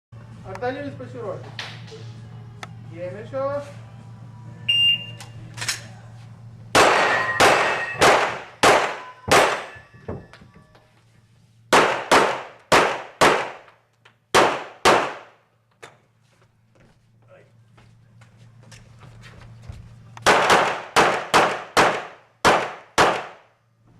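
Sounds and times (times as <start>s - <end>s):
shot timer beep: 4.7s - 5.3s
handgun shots: 6.8s - 9.8s, 11.7s - 13.8s, 14.4s - 15.4s, 20.2s - 23.4s.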